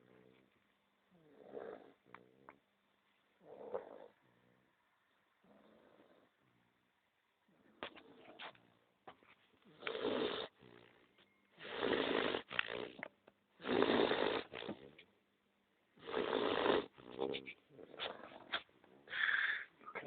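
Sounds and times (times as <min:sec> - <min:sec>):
dog snoring: 0:01.1 - 0:02.6, 0:03.4 - 0:04.7, 0:05.4 - 0:06.4, 0:09.7 - 0:15.0, 0:16.0 - 0:19.6.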